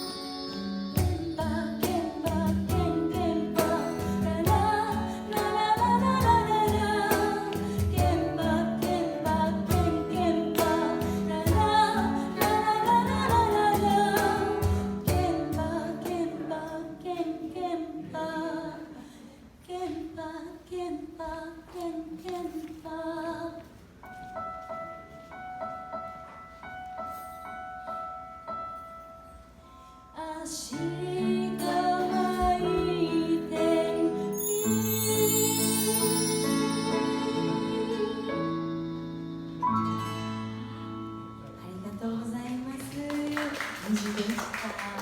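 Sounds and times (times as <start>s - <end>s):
live band playing pop song: 0.0s - 16.3s
piano chords: 0.0s - 18.6s, 30.7s - 42.0s
woman singing: 0.0s - 23.8s, 30.2s - 39.6s, 41.6s - 45.0s.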